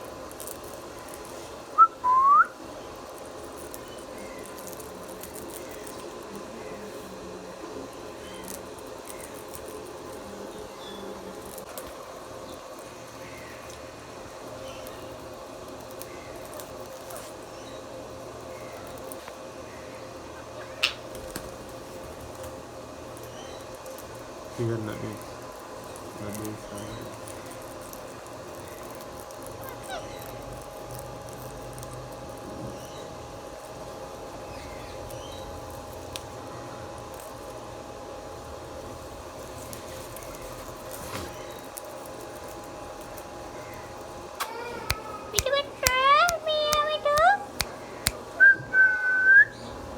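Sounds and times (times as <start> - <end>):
background hiss: 0.0 - 29.8, 43.9 - 49.8
steady low background hum: 0.0 - 49.9
faint bird chirps: 1.8 - 2.6
parrot chirps and clicks: 20.7 - 21.3, 44.4 - 48.3.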